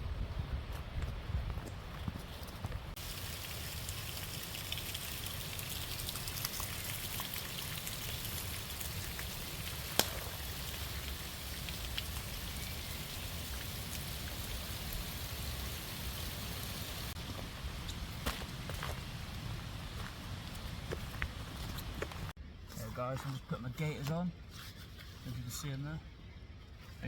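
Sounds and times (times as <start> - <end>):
rain pattering: 3.0 - 20.7.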